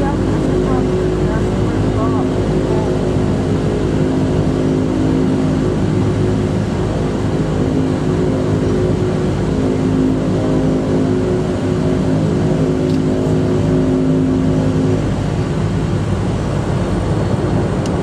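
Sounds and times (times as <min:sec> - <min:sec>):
turboprop engine drone in cabin: 0:00.0 - 0:18.0.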